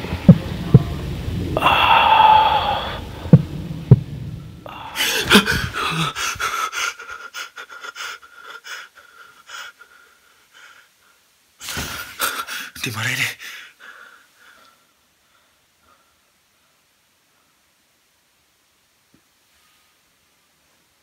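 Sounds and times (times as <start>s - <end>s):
person gasping and panting: 1.6s - 3.1s, 4.7s - 11.0s, 11.6s - 12.8s.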